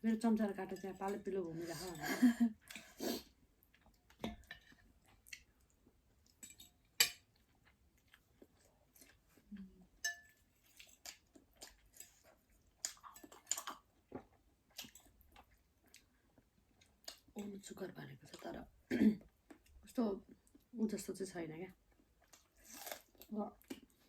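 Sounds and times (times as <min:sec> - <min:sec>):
chewing noodles: 0:01.1 - 0:09.8, 0:10.4 - 0:17.5, 0:21.7 - 0:24.0
cutlery clinking against bowl: 0:06.4 - 0:07.3, 0:10.0 - 0:11.2.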